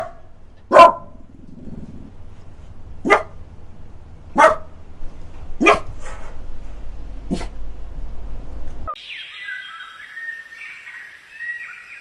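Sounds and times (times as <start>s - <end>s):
dog barking: 0.0s - 1.2s, 3.0s - 3.4s, 4.3s - 4.8s, 5.6s - 6.2s, 7.3s - 7.5s.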